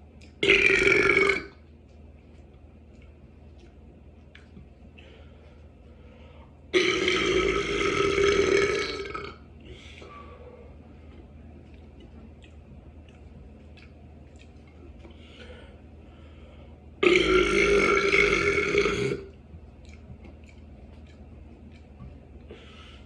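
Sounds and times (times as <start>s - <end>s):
loud drawn-out burp: 0.4s - 1.6s, 6.7s - 9.4s, 17.0s - 19.3s.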